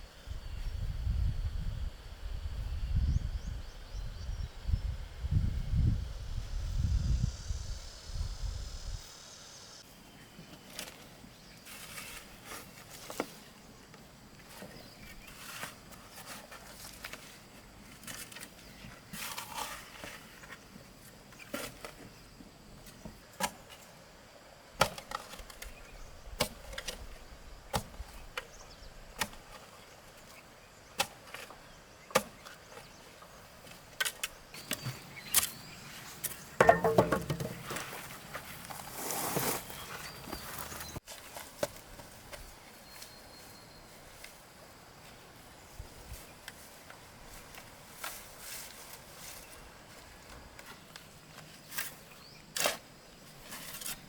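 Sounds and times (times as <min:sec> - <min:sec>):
hard objects knocking and clicking: 0:36.6 - 0:37.7.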